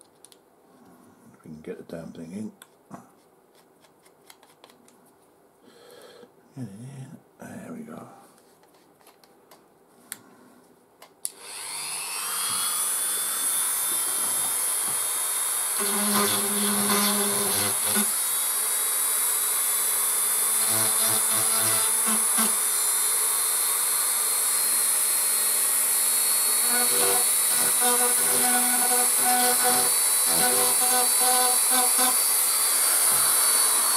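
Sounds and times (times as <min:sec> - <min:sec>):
rotary tool grinding plastic: 0:26.4 - 0:33.9.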